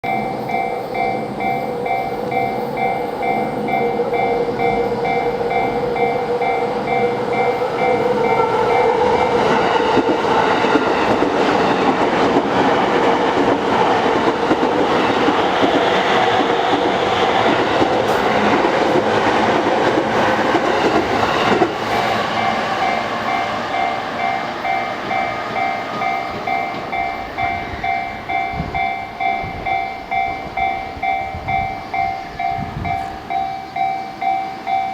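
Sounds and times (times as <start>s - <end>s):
train rumble and wheel clatter: 0.0s - 34.9s
level crossing bell ringing: 22.4s - 34.9s.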